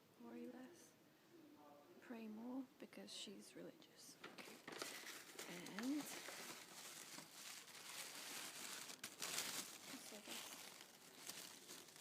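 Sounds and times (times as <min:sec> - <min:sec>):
packaging crinkling and rustling: 0:04.2 - 0:12.0.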